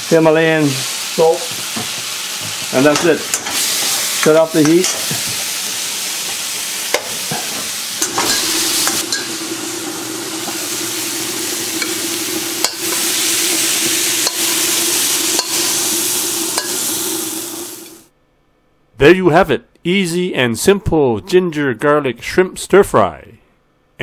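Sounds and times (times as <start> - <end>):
food sizzling in a wok: 0.0 - 18.1
spatula clacking against wok: 15.3 - 15.7.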